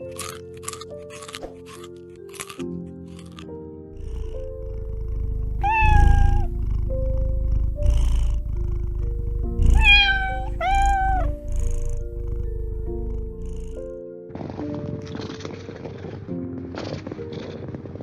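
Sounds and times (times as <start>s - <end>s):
background music: 0.0s - 18.0s
cat purring: 3.1s - 16.2s
cat meowing: 5.6s - 6.6s, 9.6s - 12.1s.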